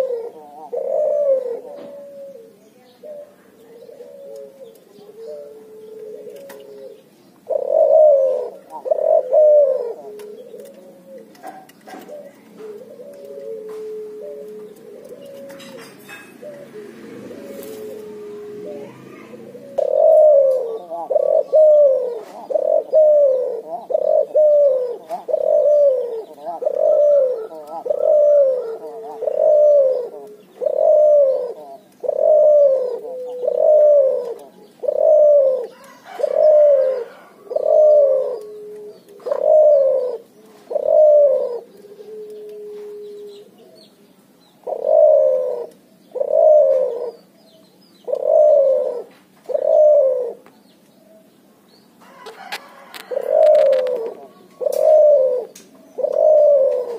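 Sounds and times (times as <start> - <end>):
dove cooing: 0.0 - 51.3, 52.0 - 56.9.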